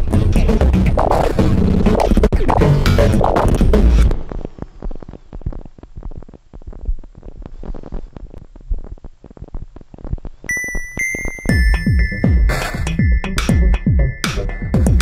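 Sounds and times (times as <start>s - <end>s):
music with scratching beat: 0.0s - 10.4s, 11.7s - 15.0s
rapid irregular crackling pops: 0.0s - 11.4s.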